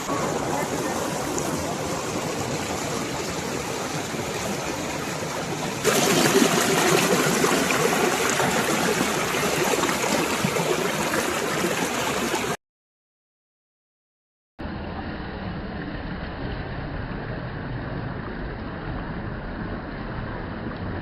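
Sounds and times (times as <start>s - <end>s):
stream water rushing: 0.0s - 12.6s.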